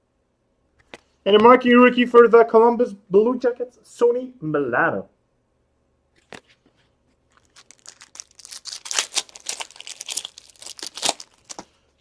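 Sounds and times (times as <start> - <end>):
wrapper being torn open: 7.3 - 12.0.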